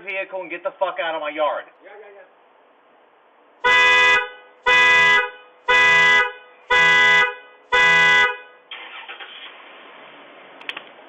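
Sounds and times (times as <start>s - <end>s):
car horn blasts: 3.6s - 8.6s.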